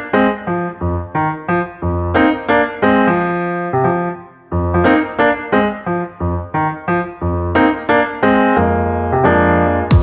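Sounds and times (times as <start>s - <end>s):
keyboard playing a quick melody: 7.6s - 10.0s.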